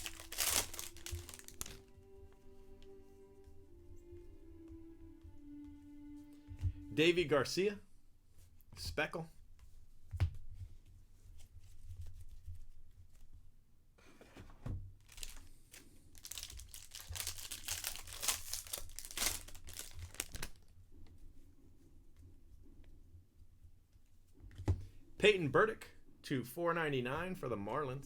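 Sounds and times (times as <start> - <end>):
foil wrapper crinkling and tearing: 0.0 - 1.9, 15.0 - 20.7.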